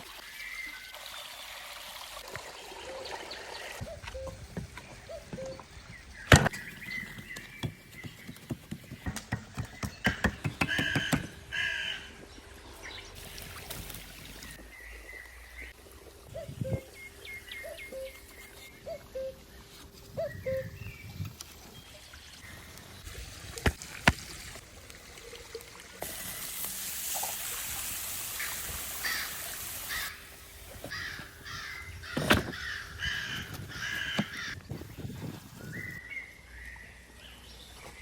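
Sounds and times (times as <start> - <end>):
bird-like chirps: 16.3 - 21.2.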